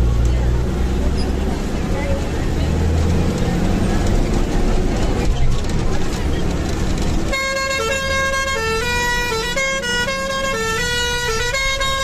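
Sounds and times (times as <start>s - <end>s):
bus engine and road noise: 0.0s - 12.0s
bus melody horn: 7.2s - 12.0s.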